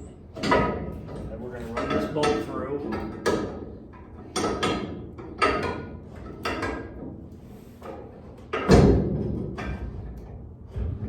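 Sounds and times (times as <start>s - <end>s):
metal parts clanking and knocking: 0.4s - 7.2s.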